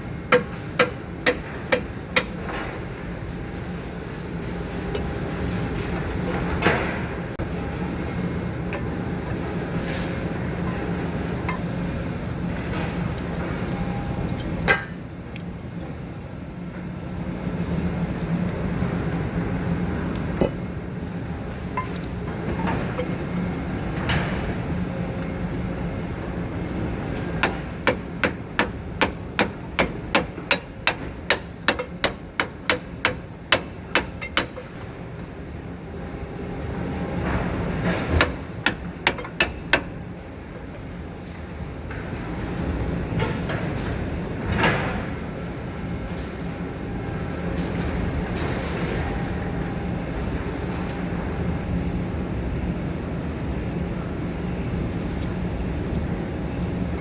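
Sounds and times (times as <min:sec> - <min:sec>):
steady low hum: 0:00.0 - 0:57.0
hammer striking metal: 0:00.3 - 0:02.4, 0:27.4 - 0:34.6.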